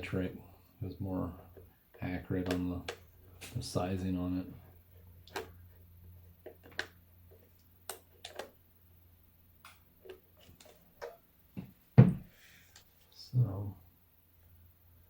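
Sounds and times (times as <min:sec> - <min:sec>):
steady low hum: 0:00.0 - 0:15.0
louder knock: 0:12.0 - 0:12.3.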